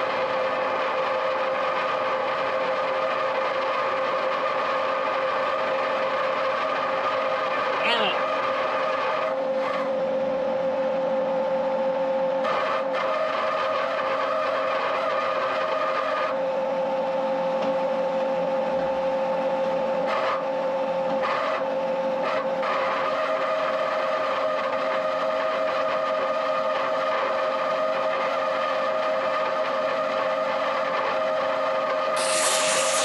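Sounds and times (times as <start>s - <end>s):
rushing noise: 32.2s - 33.0s.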